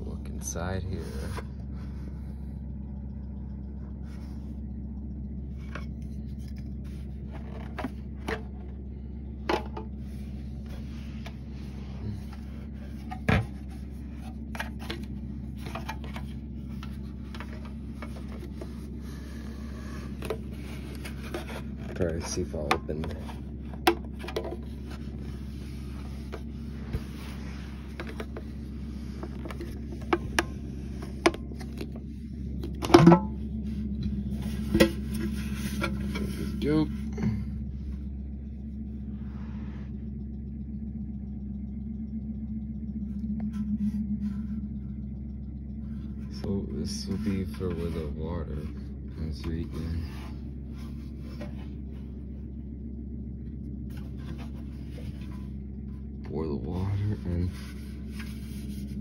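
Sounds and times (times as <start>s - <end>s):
steady low hum: 0.0s - 59.0s
plastic clatter: 7.2s - 8.8s.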